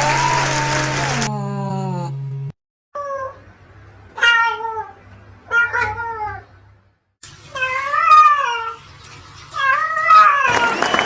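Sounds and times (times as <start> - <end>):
cat meowing: 4.2 - 6.5, 9.6 - 10.6.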